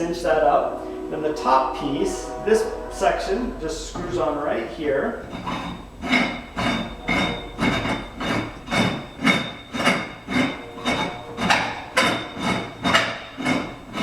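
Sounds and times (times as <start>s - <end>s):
threads grinding as post is screwed: 5.2s - 14.0s.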